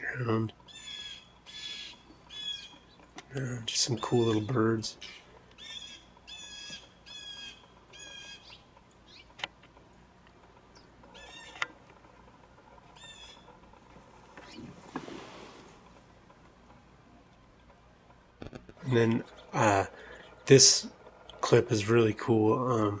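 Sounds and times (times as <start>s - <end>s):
blue jays calling harshly: 0.0s - 9.4s, 10.8s - 11.8s, 12.8s - 13.8s, 18.8s - 22.9s
sharp clicks: 7.6s - 14.0s
soft rustle: 11.4s - 16.8s.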